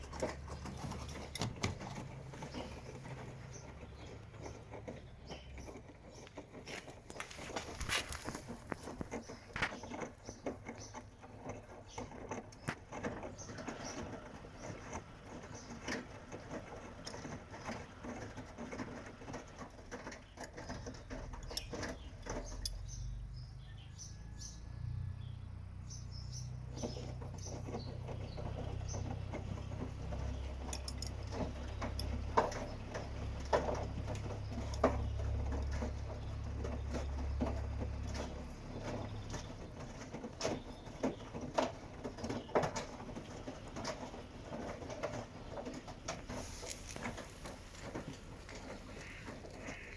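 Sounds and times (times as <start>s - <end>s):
washing machine running: 0.0s - 10.7s, 12.8s - 21.6s
clicks and light rattles: 0.0s - 23.1s, 26.3s - 49.9s.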